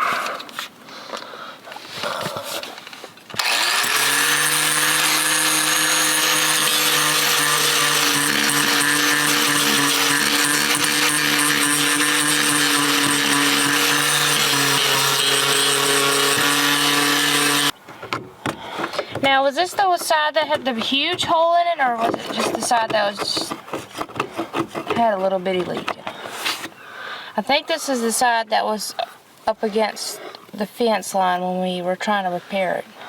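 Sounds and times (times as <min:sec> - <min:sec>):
angle grinder sanding plastic: 0:03.4 - 0:17.8, 0:19.1 - 0:25.1.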